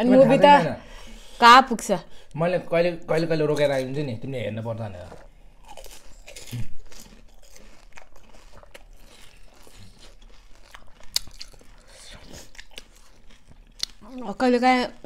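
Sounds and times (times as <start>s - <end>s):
crisp shells crunching when bitten: 5.1s - 14.2s.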